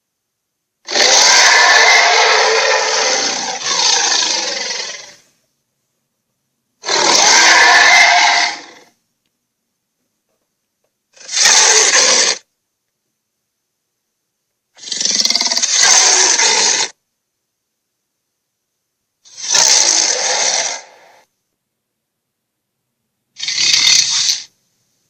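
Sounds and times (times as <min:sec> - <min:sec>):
dragon roars: 0:00.9 - 0:05.2, 0:06.8 - 0:08.9.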